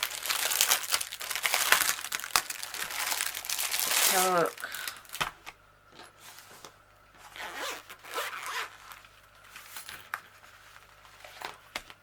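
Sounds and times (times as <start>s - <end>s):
plastic packet rasping and rustling: 0.0s - 5.3s.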